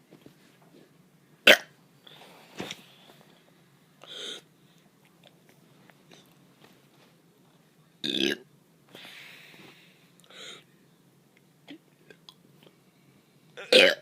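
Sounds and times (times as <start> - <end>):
child burping: 13.6 - 14.0.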